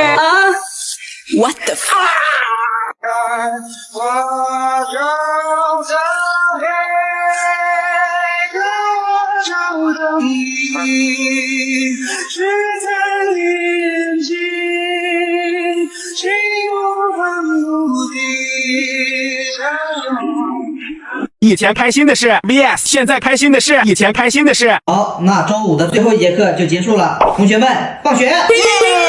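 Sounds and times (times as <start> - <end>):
woman singing with vibrato: 0.0 - 0.7, 10.2 - 12.3.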